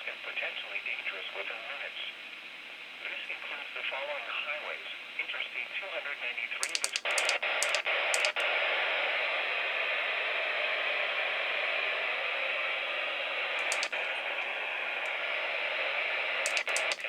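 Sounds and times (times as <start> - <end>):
radio static hiss: 0.0 - 17.0
broadcast voice: 3.0 - 8.4, 13.6 - 15.2, 16.4 - 17.0.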